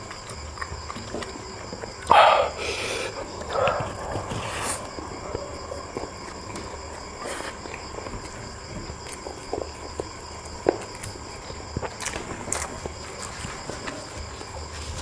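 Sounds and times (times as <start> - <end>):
insects chirring: 0.0 - 15.0
hissy bursts: 2.1 - 5.4.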